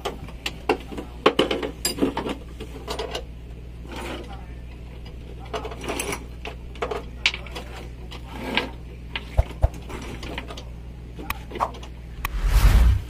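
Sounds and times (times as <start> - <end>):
steady low hum: 12.0 - 13.0.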